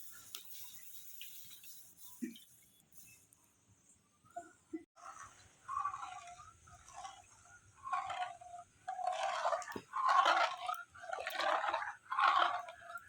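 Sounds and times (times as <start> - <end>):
spatula scraping and sloshing milk: 5.0 - 13.0.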